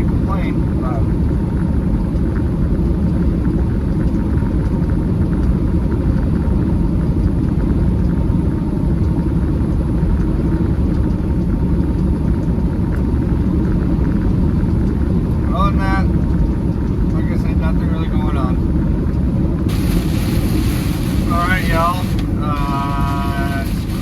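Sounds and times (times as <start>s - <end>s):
road noise: 0.0s - 24.0s
truck engine rumble: 0.0s - 24.0s.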